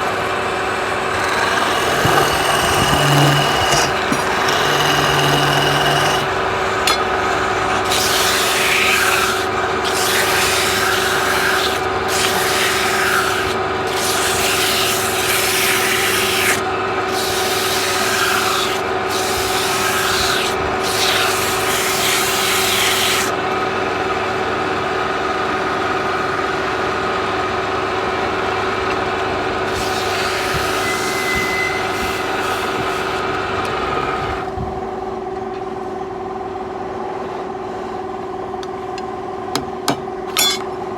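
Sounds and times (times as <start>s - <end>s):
wood lathe motor hum: 0.0s - 24.1s, 29.6s - 34.6s
sandpaper hissing on spinning wood: 1.1s - 6.3s, 7.8s - 23.3s.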